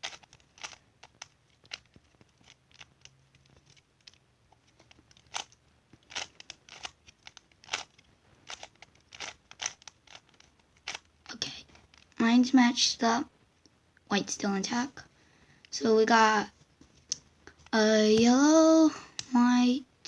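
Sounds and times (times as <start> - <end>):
puzzle cube plastic clicking: 0.0 - 12.2.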